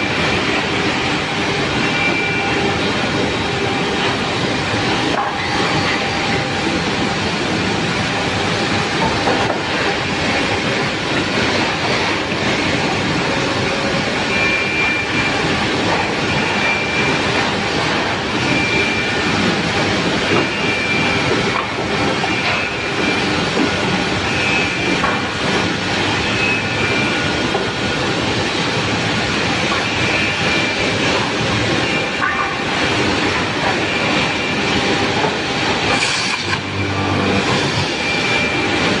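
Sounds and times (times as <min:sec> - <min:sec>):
woodworking machinery running: 0:00.0 - 0:39.0
short high-pitched whines: 0:35.9 - 0:38.6.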